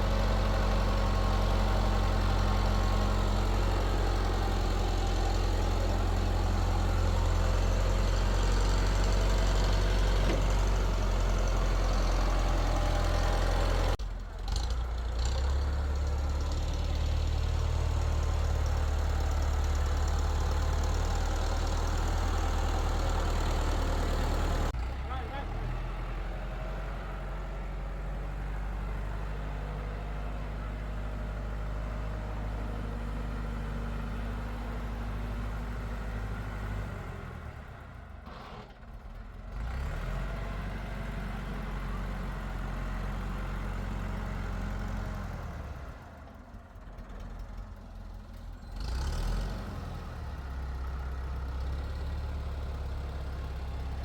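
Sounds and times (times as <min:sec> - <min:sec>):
vehicle engine droning: 0:00.0 - 0:54.0.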